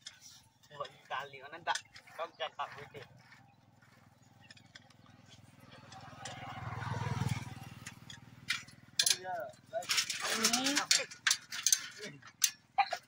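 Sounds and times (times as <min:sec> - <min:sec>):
vehicle engine passing by: 0:02.2 - 0:09.6.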